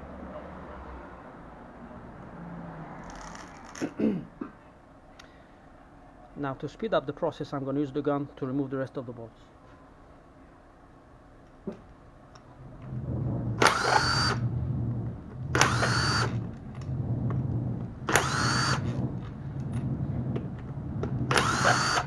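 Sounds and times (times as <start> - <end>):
steady low hum: 12.0 - 22.0
impact gun whine: 12.9 - 22.0.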